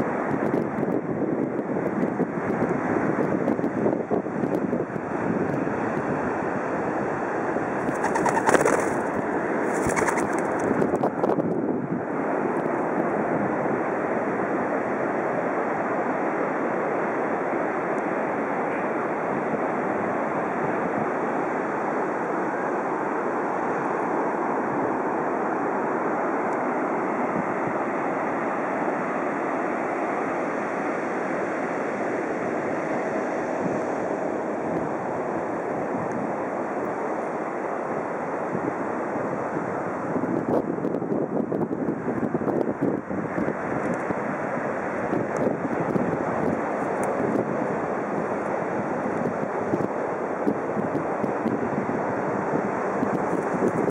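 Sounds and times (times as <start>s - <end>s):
ocean surf washing: 4.2s - 11.3s, 11.9s - 53.9s.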